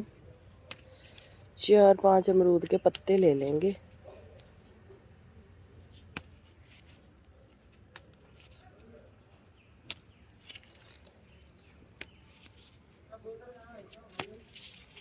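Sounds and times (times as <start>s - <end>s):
leaves snapping off: 0.7s - 1.4s, 6.0s - 8.9s, 9.8s - 12.8s, 13.8s - 15.0s
leaves rustling: 5.8s - 15.0s.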